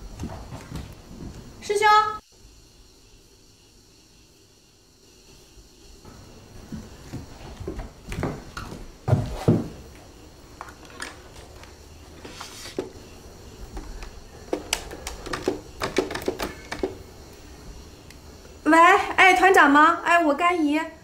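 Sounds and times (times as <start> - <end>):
objects knocking and clicking: 13.7 - 17.0.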